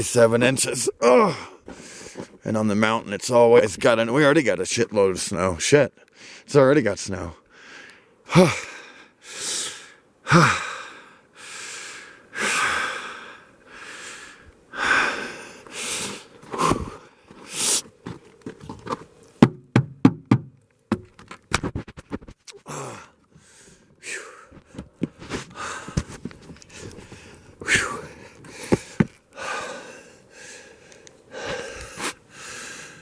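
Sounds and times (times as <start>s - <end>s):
person breathing hard: 1.3s - 2.4s, 7.5s - 17.9s, 22.6s - 33.0s
sharp knocks and clicks: 19.4s - 22.3s.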